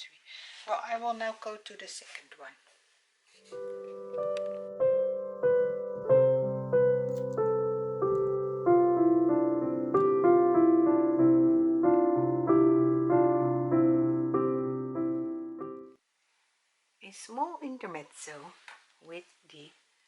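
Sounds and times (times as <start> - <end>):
solo piano: 3.4 - 16.0.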